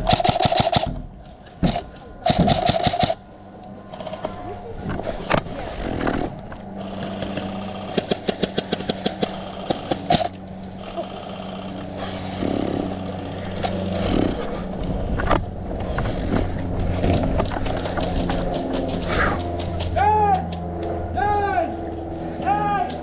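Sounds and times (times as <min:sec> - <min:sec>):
airsoft gun shots: 0:00.0 - 0:01.0
steady low hum: 0:00.0 - 0:23.0.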